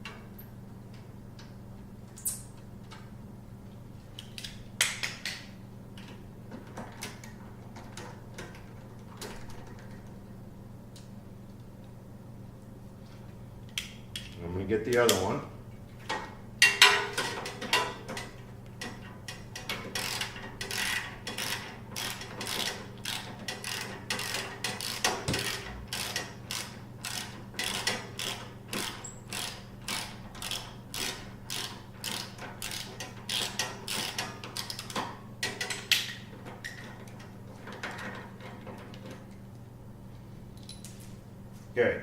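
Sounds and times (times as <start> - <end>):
ratchet wrench clicking: 20.0 - 35.0.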